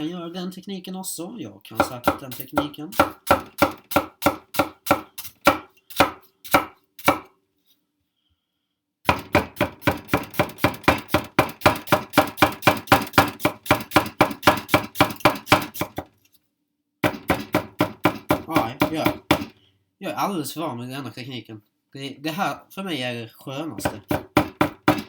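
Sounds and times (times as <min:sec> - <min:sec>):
cleaver chopping on cutting board: 0:01.8 - 0:07.3, 0:09.1 - 0:16.1, 0:17.0 - 0:19.5, 0:23.8 - 0:25.0.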